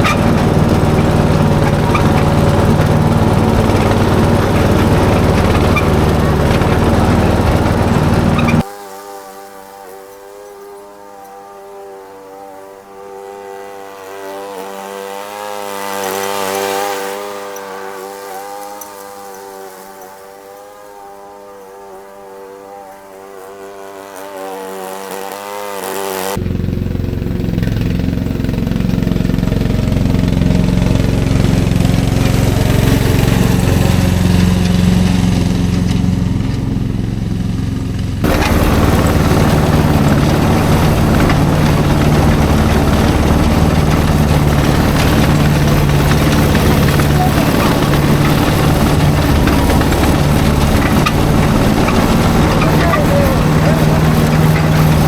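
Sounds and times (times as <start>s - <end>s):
low engine rumble: 0.0s - 8.7s, 26.3s - 55.0s
lawn mower engine running: 0.0s - 55.0s.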